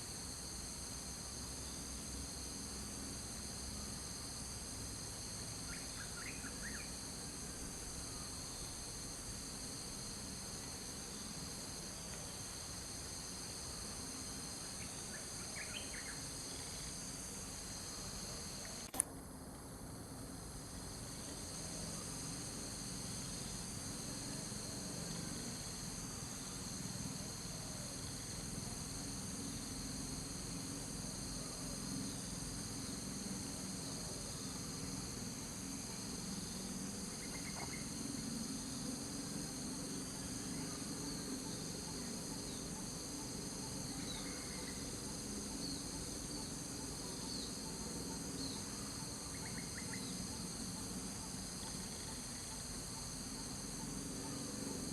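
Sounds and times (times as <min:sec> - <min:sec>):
insects chorus shrilling: 0:05.7 - 0:07.0, 0:12.4 - 0:18.9, 0:39.4 - 0:54.9.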